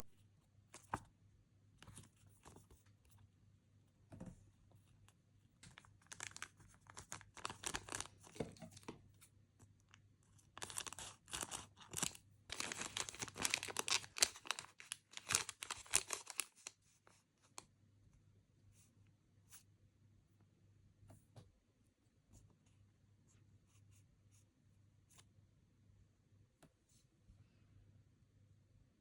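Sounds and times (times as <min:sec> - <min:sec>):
packaging crinkling and tearing: 0:05.8 - 0:08.3, 0:10.5 - 0:16.7.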